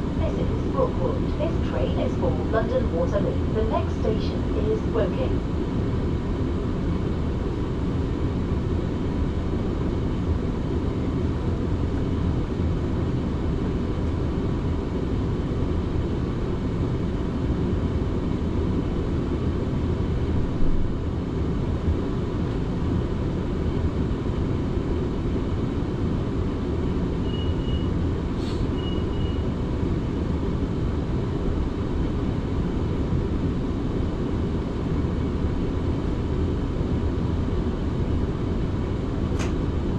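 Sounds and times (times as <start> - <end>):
train rumbling inside carriage: 0.0 - 5.9, 20.1 - 34.3, 36.8 - 39.9
click: 39.4 - 39.6.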